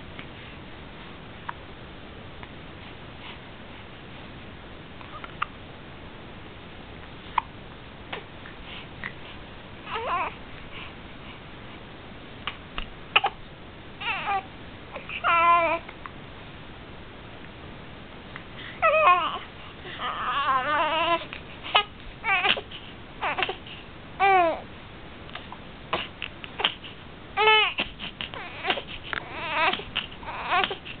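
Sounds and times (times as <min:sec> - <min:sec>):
baby babbling: 0:09.9 - 0:10.4, 0:14.0 - 0:15.8, 0:18.8 - 0:22.6, 0:23.2 - 0:23.6, 0:27.4 - 0:30.9.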